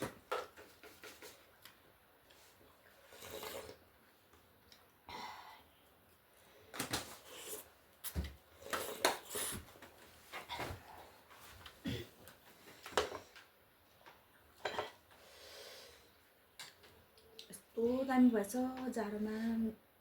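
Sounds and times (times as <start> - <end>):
person slurping noodle soup: 3.0 - 3.9.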